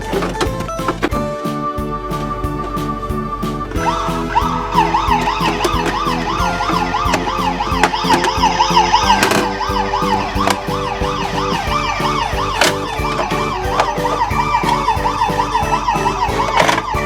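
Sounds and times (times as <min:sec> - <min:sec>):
toy siren wailing: 0:03.8 - 0:17.0.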